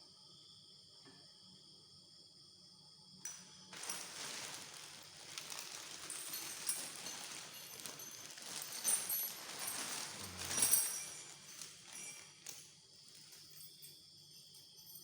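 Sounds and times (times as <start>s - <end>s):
packaging rustling: 3.7s - 13.3s.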